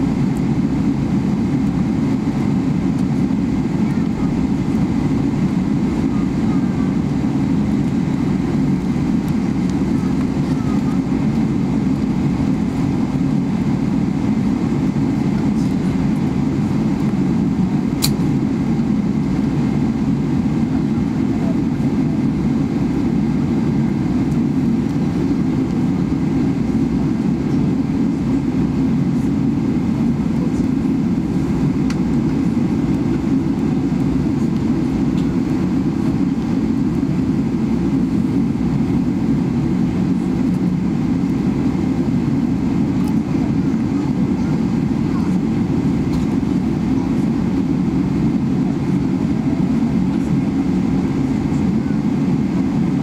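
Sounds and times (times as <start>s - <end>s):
airliner engines rumbling: 0.0s - 53.0s
sharp click: 18.0s - 18.2s.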